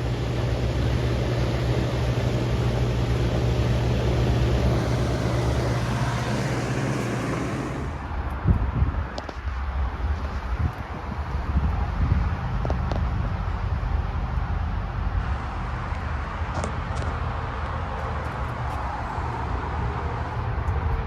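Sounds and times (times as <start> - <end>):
compressor hum: 0.0 - 8.9
condenser fan rushing: 0.0 - 9.2.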